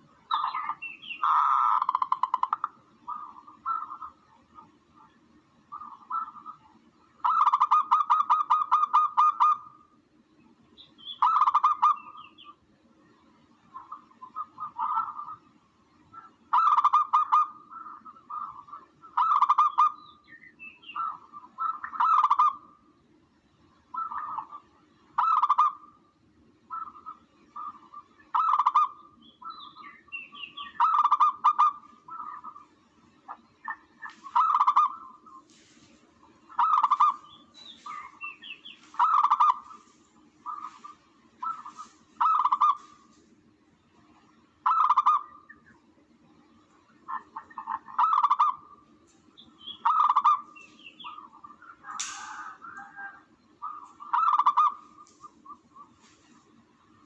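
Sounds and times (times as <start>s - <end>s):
harsh bird calls: 0.0s - 9.9s, 10.8s - 12.6s, 13.2s - 22.9s, 23.6s - 43.3s, 44.0s - 45.9s, 46.5s - 57.0s
higher bird chirps: 0.3s - 4.2s, 26.7s - 32.7s, 33.6s - 43.2s.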